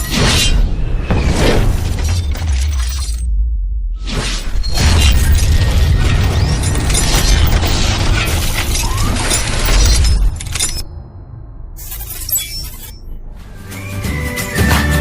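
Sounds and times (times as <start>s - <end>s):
crashing and shattering: 4.6s - 10.8s.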